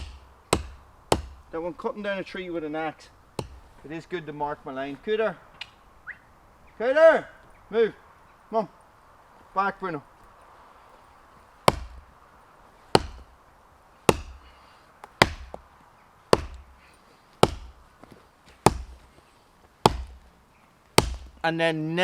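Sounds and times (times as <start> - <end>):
axe chopping tree trunk: 0.0 - 1.6, 3.4 - 3.9, 11.6 - 12.1, 12.9 - 13.4, 14.0 - 15.7, 16.3 - 17.9, 18.5 - 19.1, 19.8 - 20.3, 20.9 - 21.4.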